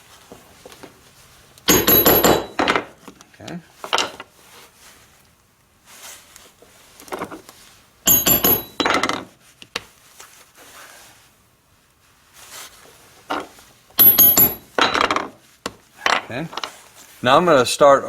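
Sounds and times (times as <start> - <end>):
knocks of tools and leather: 1.7 - 3.2, 8.1 - 9.9, 13.3 - 16.7.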